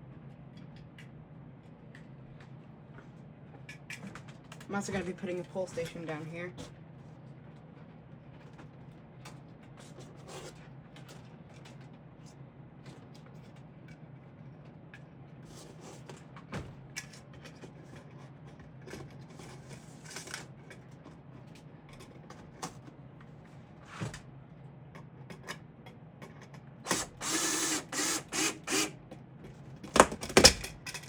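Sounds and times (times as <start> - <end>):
low steady hum: 0.0 - 31.0
short mechanical bursts: 26.9 - 28.9.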